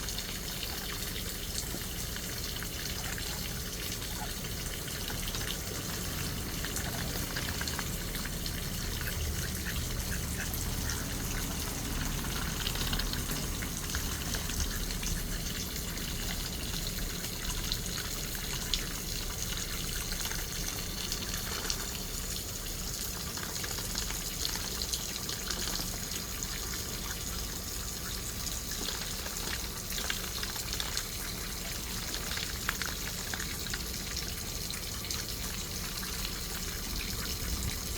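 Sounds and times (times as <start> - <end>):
water running and splashing: 0.0 - 37.9
small sharp splashes and clicks: 23.0 - 26.9, 28.6 - 37.3.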